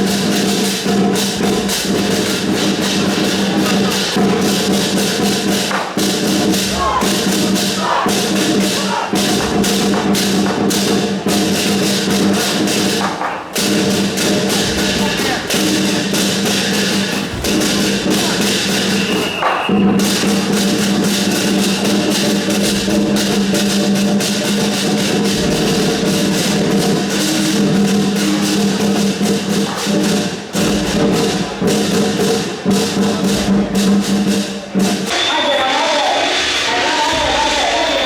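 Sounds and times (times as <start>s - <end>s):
rapid dense percussion: 0.0s - 38.0s.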